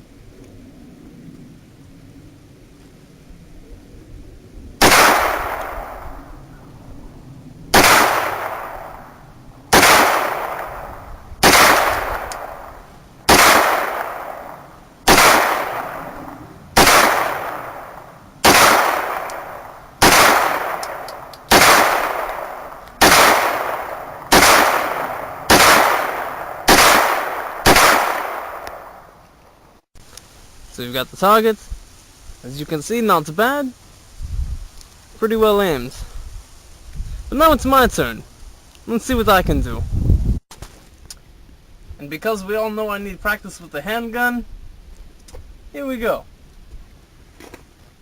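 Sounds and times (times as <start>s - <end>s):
pistol shots echoing: 4.8s - 6.2s, 7.7s - 29.1s.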